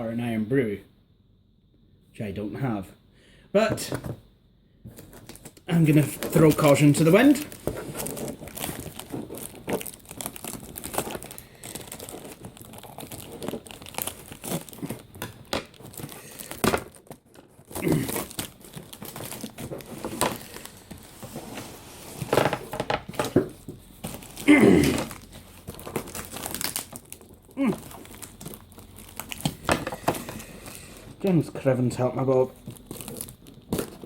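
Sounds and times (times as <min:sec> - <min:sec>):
packaging crinkling and crackling: 0:04.9 - 0:34.0
packaging tearing: 0:05.3 - 0:21.0, 0:24.0 - 0:31.2, 0:32.7 - 0:34.0.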